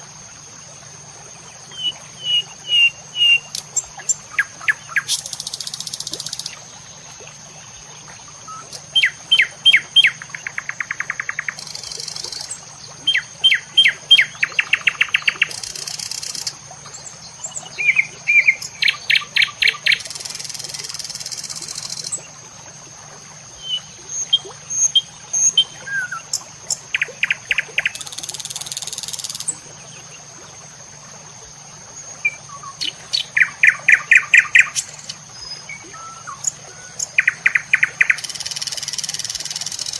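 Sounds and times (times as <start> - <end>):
songbird singing with trills: 17.5 - 20.7, 32.2 - 39.9.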